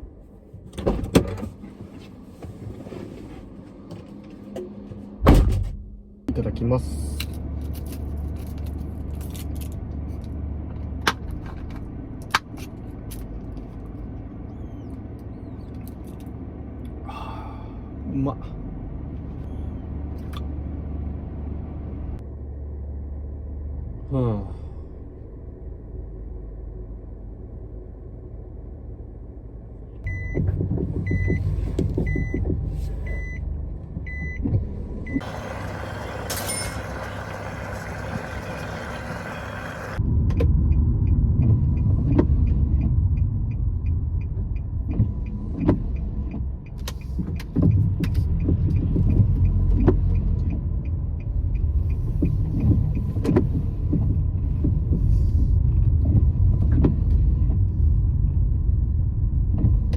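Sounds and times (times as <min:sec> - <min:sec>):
engine and road rumble: 0:00.0 - 0:59.9.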